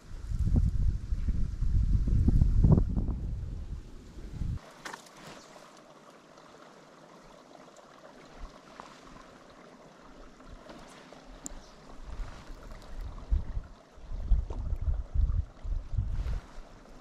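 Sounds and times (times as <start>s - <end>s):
wind buffeting microphone: 0.0s - 4.6s, 11.6s - 16.8s
stream trickling: 4.0s - 17.0s
light ticks: 11.4s - 11.6s.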